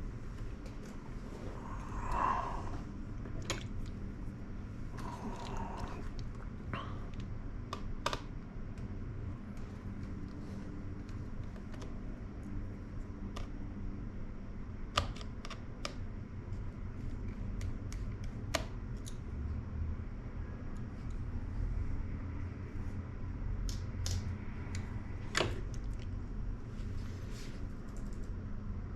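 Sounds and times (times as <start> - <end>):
low steady hum: 0.0 - 28.9
light clicks of small parts: 17.0 - 19.3, 23.6 - 26.3, 27.6 - 28.4.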